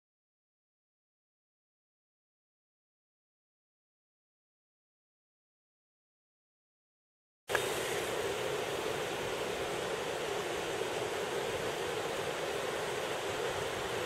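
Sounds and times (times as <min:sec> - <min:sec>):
fast water rushing: 0:07.5 - 0:14.0.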